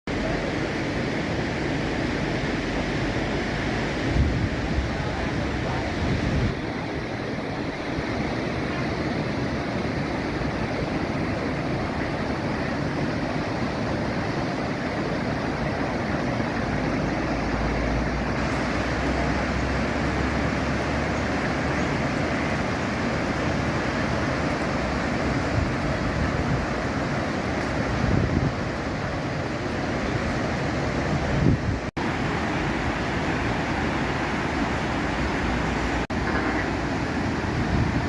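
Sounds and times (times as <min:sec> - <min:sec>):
waterfall rushing: 0:00.1 - 0:38.0.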